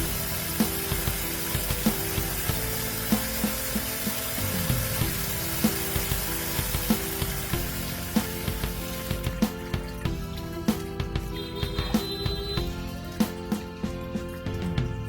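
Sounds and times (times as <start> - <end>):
steady hiss: 0.0 - 9.7
background music with steady beat: 0.0 - 15.0.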